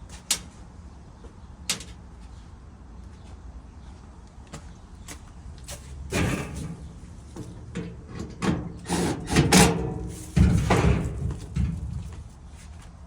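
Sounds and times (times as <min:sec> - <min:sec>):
dryer panels knocking and banging: 0:06.1 - 0:12.4.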